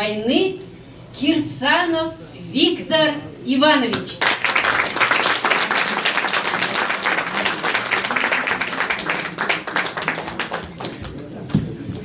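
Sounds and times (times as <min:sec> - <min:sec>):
audience applauding: 0:04.2 - 0:11.6.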